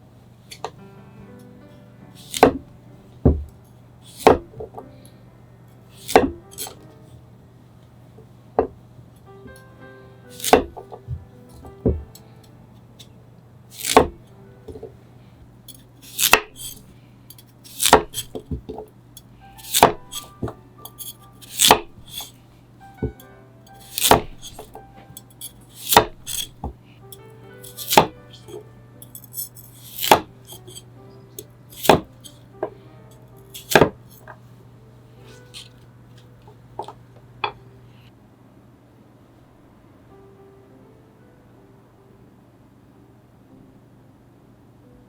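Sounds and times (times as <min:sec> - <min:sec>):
knife chopping carrot on board: 0:02.2 - 0:02.7, 0:03.3 - 0:03.5, 0:04.1 - 0:04.7, 0:06.0 - 0:06.8, 0:10.3 - 0:11.2, 0:11.8 - 0:12.1, 0:13.8 - 0:14.9, 0:16.0 - 0:16.9, 0:17.6 - 0:18.8, 0:19.6 - 0:22.4, 0:23.0 - 0:24.8, 0:25.7 - 0:26.8, 0:27.6 - 0:28.6, 0:29.8 - 0:30.8, 0:31.7 - 0:32.4, 0:33.5 - 0:34.4.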